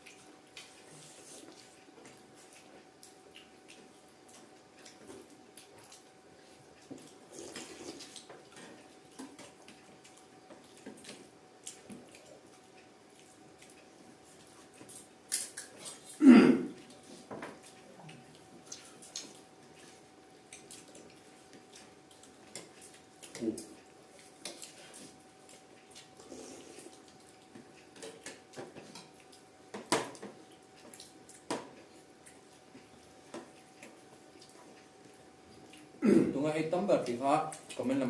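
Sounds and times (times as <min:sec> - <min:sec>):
faint steady hum: 0:00.0 - 0:38.0.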